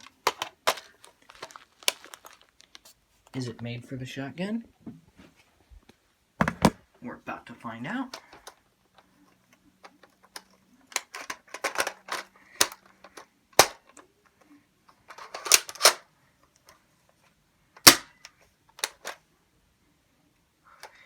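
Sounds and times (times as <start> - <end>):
plastic toy gun clicks and rattles: 0.0 - 2.8, 9.8 - 14.1, 15.0 - 16.1, 17.8 - 19.2.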